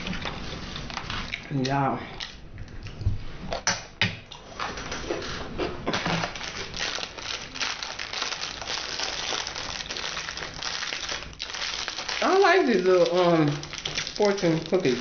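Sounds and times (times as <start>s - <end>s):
plastic wrapper crinkling: 5.9s - 15.0s.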